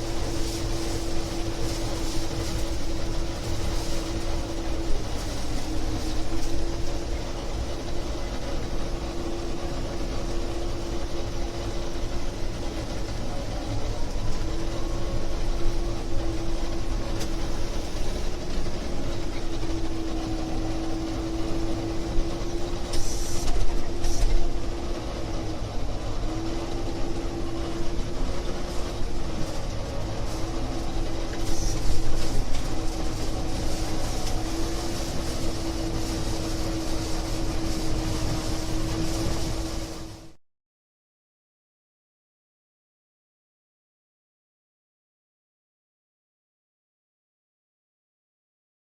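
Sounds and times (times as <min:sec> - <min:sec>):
combine harvester rumbling: 0:00.0 - 0:40.4
machine whine: 0:00.0 - 0:40.4
rushes of hiss: 0:22.9 - 0:24.4.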